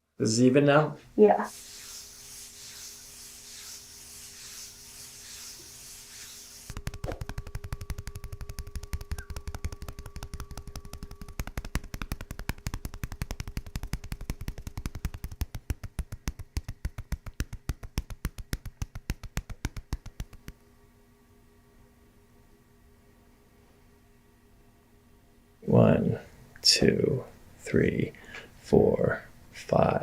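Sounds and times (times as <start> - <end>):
adjusting instrument tapping clicks: 6.8 - 20.6.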